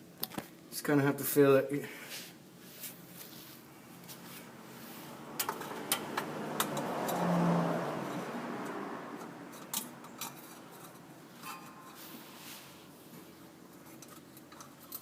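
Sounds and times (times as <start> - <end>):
vehicle passing by: 4.2 - 11.4.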